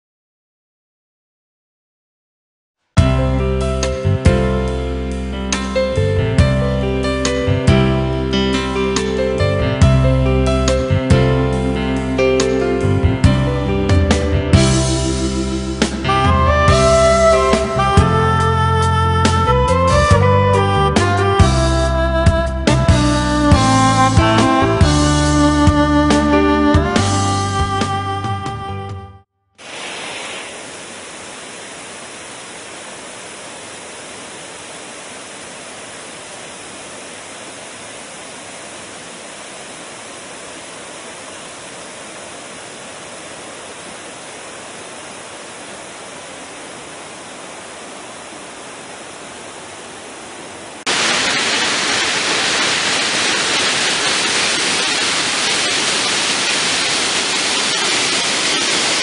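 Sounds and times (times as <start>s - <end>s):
waterfall rushing: 29.6s - 59.0s.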